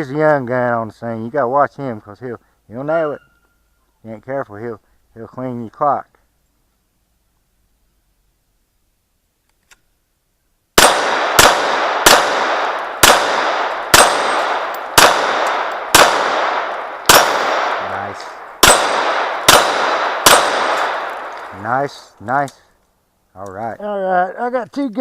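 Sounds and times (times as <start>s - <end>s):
pistol shots hitting steel targets: 10.8s - 21.5s.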